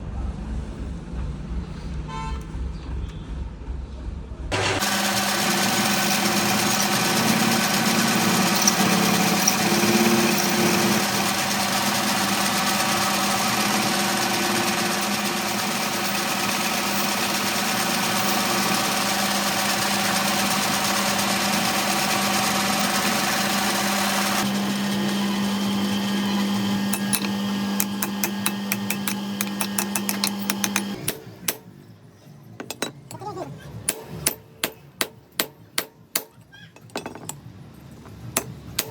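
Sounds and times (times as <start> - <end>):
machine tool humming: 4.5 - 31.6.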